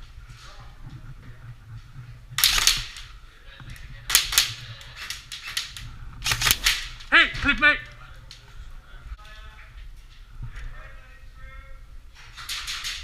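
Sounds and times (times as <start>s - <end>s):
airsoft guns firing bursts: 2.4s - 3.0s.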